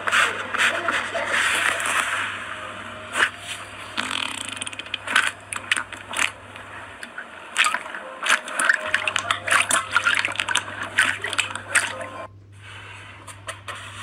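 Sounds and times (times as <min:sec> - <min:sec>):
steady low hum: 0:00.0 - 0:14.0
slime crackling and popping: 0:03.2 - 0:06.4, 0:07.6 - 0:12.0.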